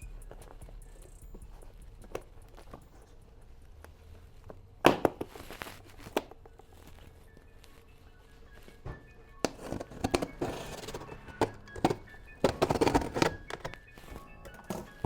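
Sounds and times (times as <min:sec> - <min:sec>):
handling rustles: 0:01.3 - 0:15.0
cardboard box cracking: 0:09.6 - 0:13.8
cardboard tearing: 0:09.6 - 0:13.8.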